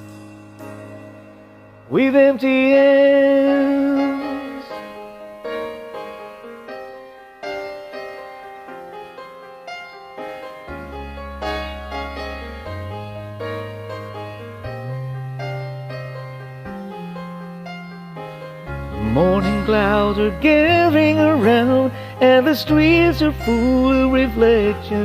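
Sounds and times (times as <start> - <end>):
sustained bass notes: 0.0 - 4.7, 10.8 - 25.0
keyboard playing chords: 0.0 - 25.0.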